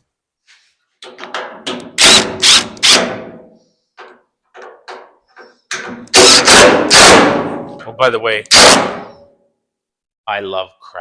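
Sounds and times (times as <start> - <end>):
loud clunks of door hardware: 4.0 - 7.8.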